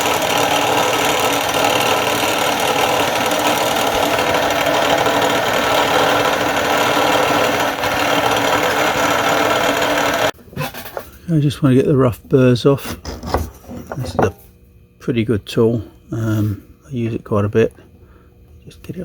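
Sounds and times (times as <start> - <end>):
metalworking machine cutting metal: 0.0 - 10.4.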